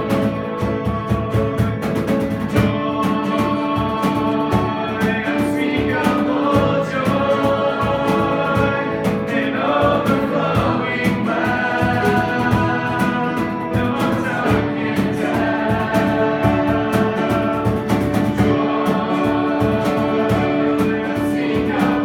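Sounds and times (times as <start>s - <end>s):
guitar: 0.0s - 22.0s
steady beat: 0.0s - 22.0s
voices singing: 0.0s - 22.0s.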